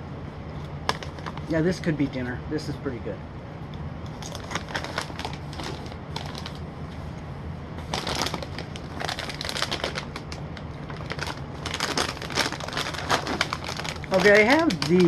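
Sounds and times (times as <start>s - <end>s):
steady low hum: 0.0s - 15.0s
popcorn being chewed: 0.6s - 1.5s, 4.0s - 6.7s, 7.9s - 15.0s.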